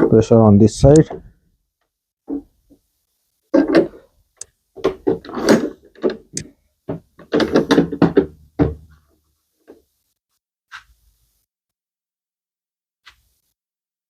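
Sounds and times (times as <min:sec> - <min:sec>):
clamp knocking and scraping on wood: 0:03.6 - 0:04.1, 0:04.8 - 0:09.0.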